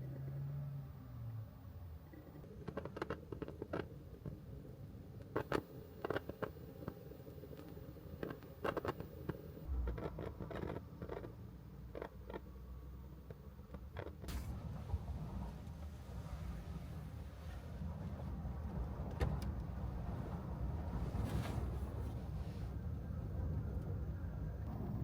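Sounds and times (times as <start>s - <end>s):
low rumble: 9.7s - 10.6s.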